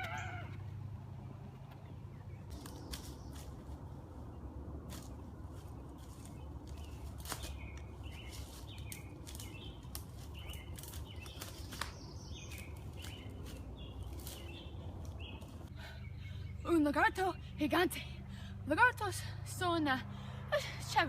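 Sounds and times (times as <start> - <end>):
low outdoor rumble: 0.0 - 21.0
small birds chirping: 1.2 - 17.8.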